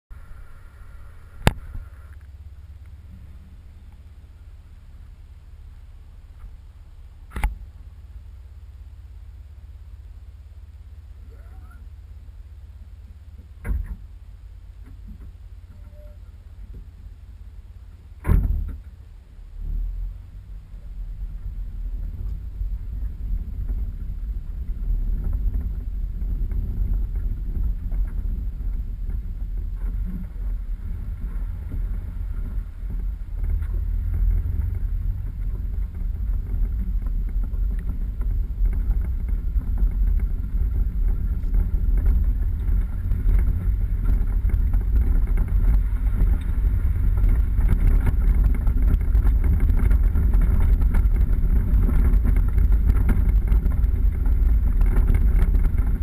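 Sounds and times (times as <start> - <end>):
vehicle engine rumble: 0.0 - 56.0
wind noise: 18.2 - 56.0.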